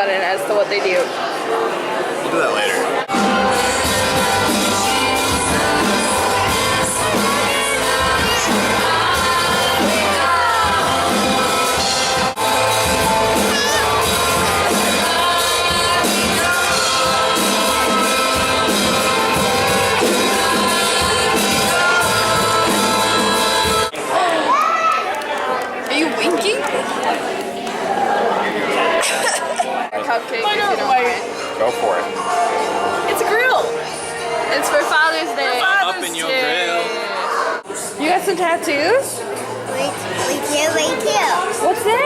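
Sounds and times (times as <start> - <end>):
pop music with singing: 3.0 - 24.2.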